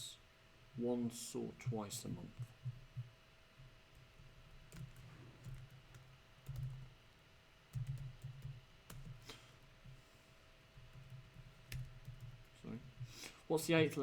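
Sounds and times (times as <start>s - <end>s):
keyboard and mouse clicks: 10.9s - 12.4s.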